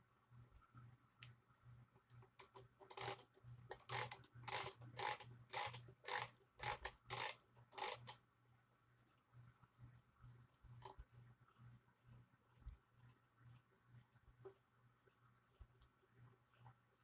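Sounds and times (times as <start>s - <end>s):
alarm clock winding ratchet: 2.4s - 8.2s.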